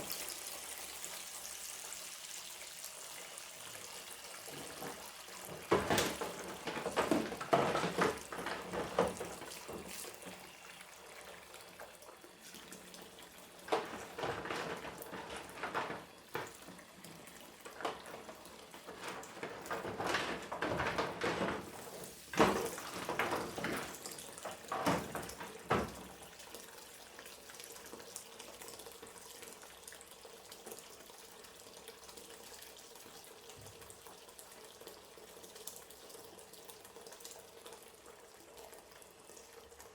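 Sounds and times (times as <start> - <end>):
tap water running: 0.0 - 39.9
dishes clinking in a sink: 4.4 - 10.5, 13.5 - 26.3.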